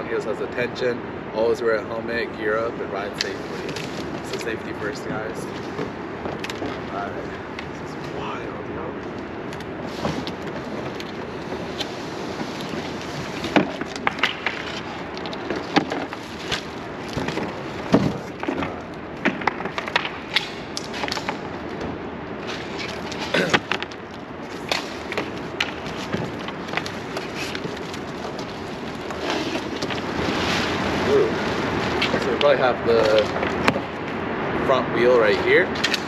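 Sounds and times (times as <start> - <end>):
steady background hiss: 0.0 - 36.0
packaging rustling: 9.5 - 34.1
knocks and clatters of parts: 13.4 - 30.1.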